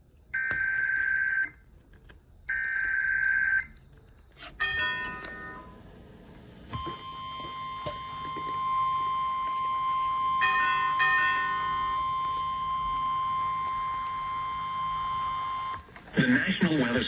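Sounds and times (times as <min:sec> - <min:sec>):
steady high alarm beep: 0:06.7 - 0:15.9.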